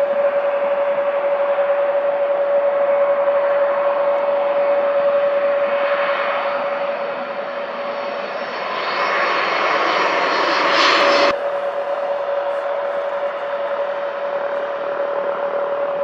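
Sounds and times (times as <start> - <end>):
jet engines passing: 0.0 - 16.0
steady hum-like tone: 11.2 - 16.0.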